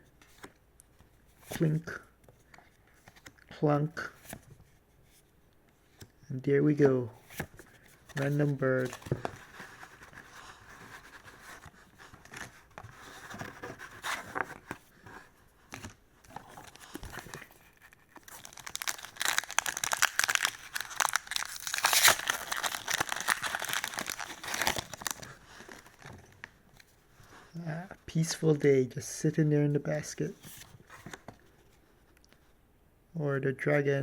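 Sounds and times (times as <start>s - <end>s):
foil wrapper tearing and crinkling: 18.1s - 26.0s.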